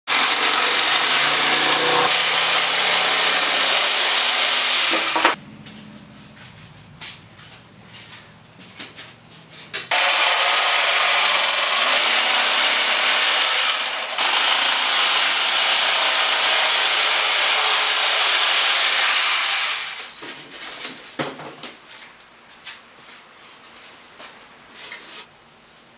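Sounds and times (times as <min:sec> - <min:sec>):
power tool running: 0:00.1 - 0:05.4, 0:09.9 - 0:20.1.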